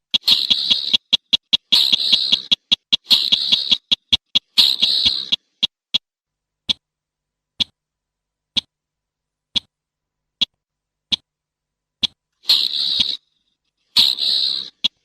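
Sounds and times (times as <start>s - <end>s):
harsh rattling bird call: 0.1s - 5.7s, 12.4s - 15.0s.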